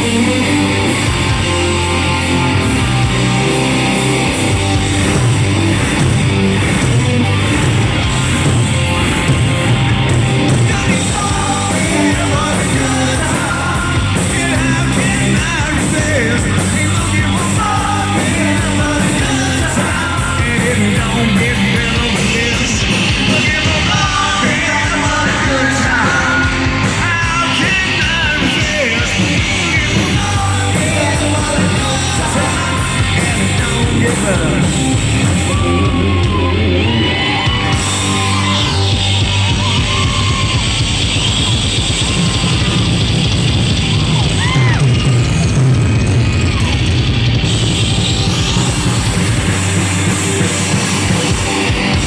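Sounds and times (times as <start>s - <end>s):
live rock band playing: 0.0s - 52.0s
person singing and yelling: 10.3s - 40.8s.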